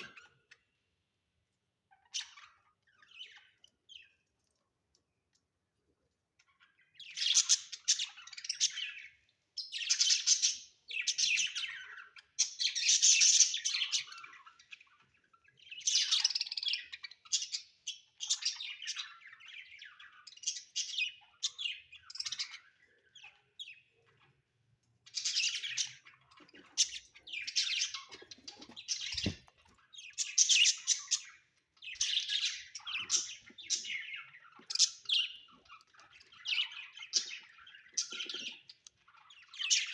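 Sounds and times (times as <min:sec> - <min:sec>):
budgerigars chirping: 0:25.1 - 0:39.9.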